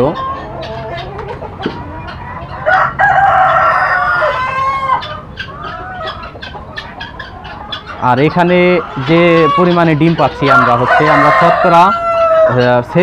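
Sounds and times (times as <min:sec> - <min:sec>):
hens clucking: 0:00.0 - 0:13.0
rooster crowing: 0:02.6 - 0:05.1, 0:08.8 - 0:12.6.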